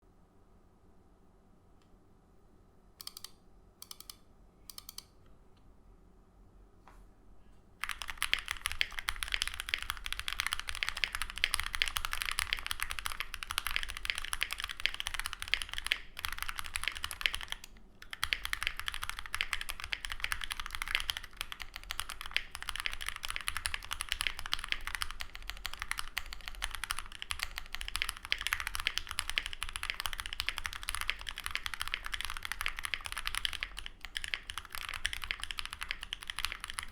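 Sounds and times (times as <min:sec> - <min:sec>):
typing on mechanical keyboard: 0:07.8 - 0:36.9.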